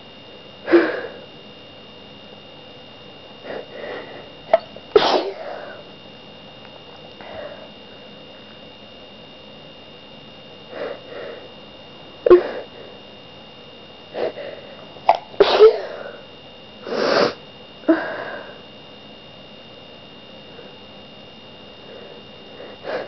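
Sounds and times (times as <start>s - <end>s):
person sniffing and breathing: 3.4s - 4.4s, 10.7s - 11.5s, 12.3s - 13.0s, 14.2s - 14.8s, 16.8s - 18.6s, 21.8s - 23.0s
person sneezing: 4.5s - 5.8s, 12.3s - 12.7s, 15.1s - 16.2s.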